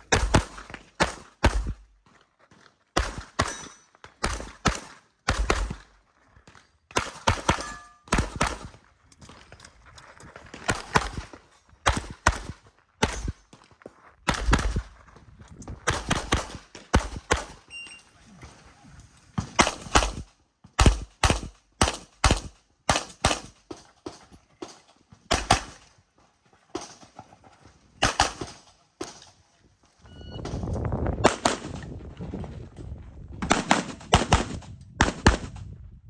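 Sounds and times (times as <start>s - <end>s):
pistol shots: 0.1s - 1.9s, 3.0s - 5.9s, 6.9s - 8.8s, 14.3s - 14.9s, 15.8s - 17.7s, 19.5s - 23.6s, 25.3s - 25.9s, 28.0s - 28.6s, 33.4s - 35.6s.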